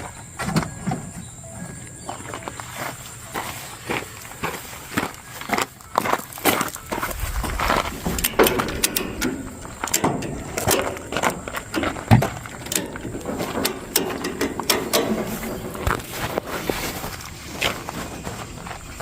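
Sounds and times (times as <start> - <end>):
mechanical clicking and knocking: 8.0 - 16.1.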